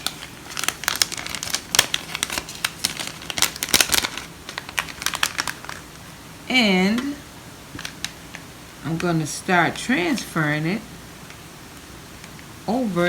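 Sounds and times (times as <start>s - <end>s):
plastic bag crinkling: 0.0s - 6.1s, 6.9s - 9.1s.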